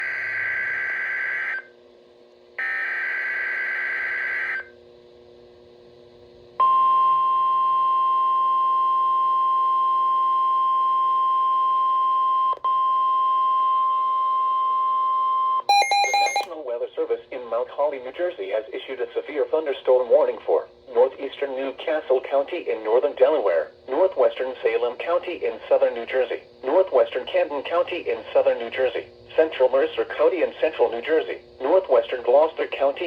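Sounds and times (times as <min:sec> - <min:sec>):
steady alarm tone: 0:15.7 - 0:16.5.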